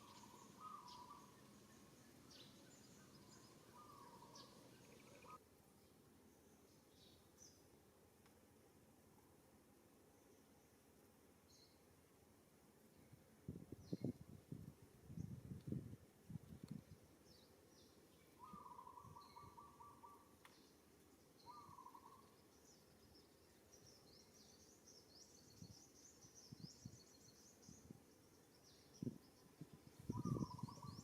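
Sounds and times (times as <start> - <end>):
small birds chirping: 0.0 - 7.6, 16.6 - 31.0.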